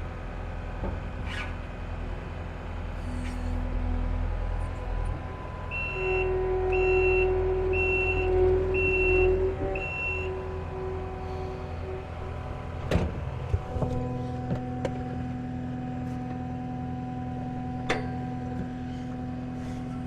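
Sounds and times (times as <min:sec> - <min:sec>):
diesel engine running: 0:00.0 - 0:20.0
backup alarm beeping: 0:05.6 - 0:10.4.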